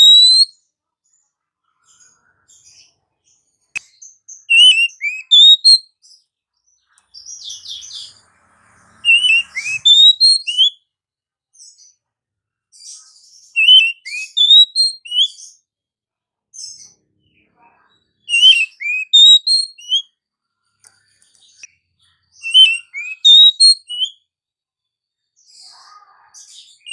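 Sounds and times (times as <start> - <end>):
bird whistling song: 0.0 - 0.7, 3.7 - 6.1, 7.2 - 8.2, 8.8 - 10.9, 13.4 - 15.6, 18.2 - 20.2, 22.3 - 24.3, 26.7 - 26.9.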